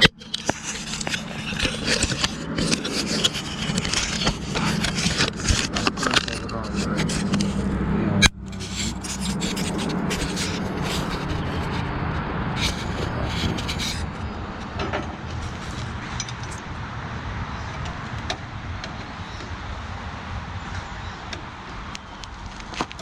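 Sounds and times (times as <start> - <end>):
hand tools scraping on metal: 0.0 - 7.7, 8.4 - 11.9, 12.5 - 16.7
low machine hum: 0.8 - 22.2.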